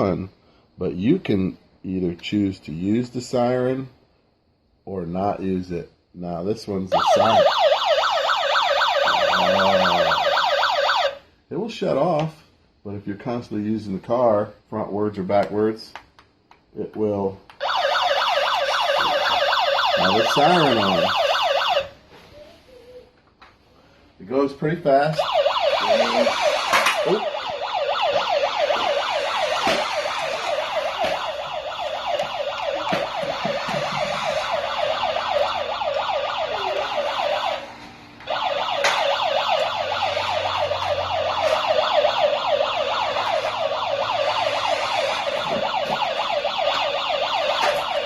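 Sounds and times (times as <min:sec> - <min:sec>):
toy siren yelping: 0:06.9 - 0:11.2, 0:17.6 - 0:22.0, 0:25.2 - 0:48.0.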